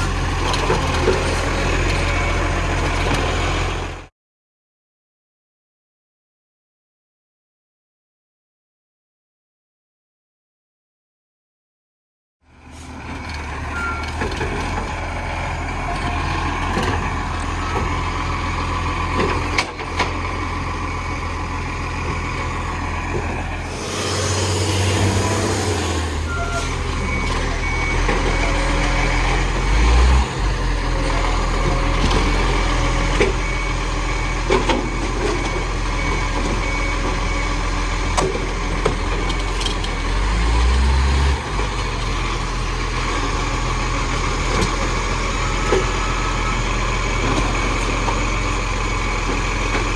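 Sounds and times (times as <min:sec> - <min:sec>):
garbage truck engine rumble: 0:00.0 - 0:04.1, 0:12.5 - 0:49.9
reversing beeper: 0:13.7 - 0:14.2, 0:23.6 - 0:38.2, 0:45.1 - 0:49.1
air hiss: 0:23.7 - 0:25.9.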